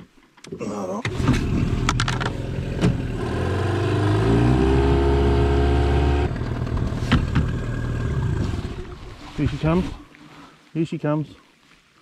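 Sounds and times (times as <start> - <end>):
outboard motor revving: 1.1 - 10.0.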